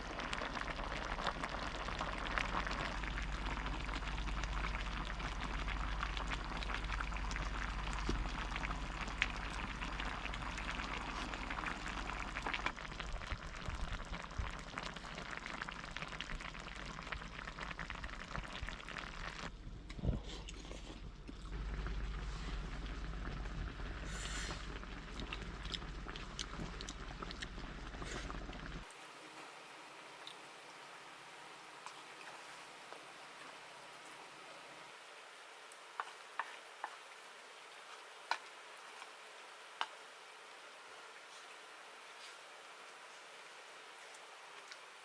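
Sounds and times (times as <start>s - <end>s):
soup bubbling in a pot: 0.0s - 45.0s.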